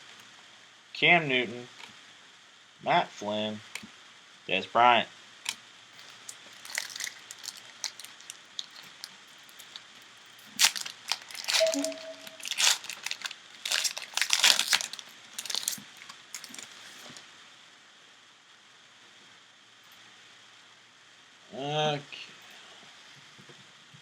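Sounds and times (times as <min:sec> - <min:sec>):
foil wrapper crinkling and tearing: 0:05.4 - 0:17.2.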